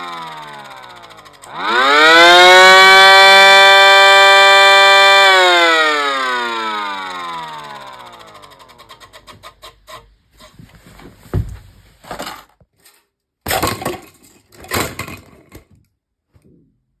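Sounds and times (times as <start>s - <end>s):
siren spinning down: 0.0s - 8.8s
rapid ticking of rotor: 0.0s - 9.6s
knocks and rustling handling: 9.1s - 16.6s.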